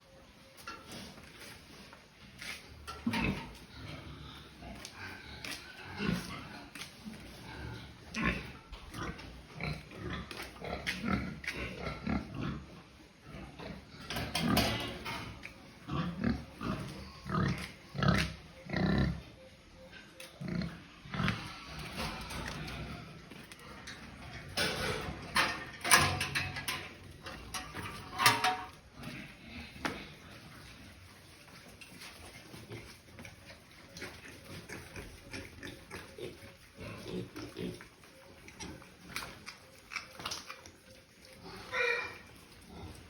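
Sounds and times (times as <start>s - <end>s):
pigs grunting: 2.9s - 31.0s, 31.9s - 43.0s.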